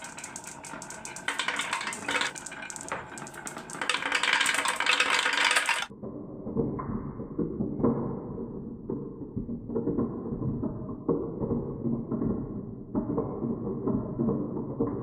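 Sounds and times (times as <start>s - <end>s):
marbles clattering down a run: 0.0s - 5.9s
muffled marble rolling: 0.0s - 15.0s.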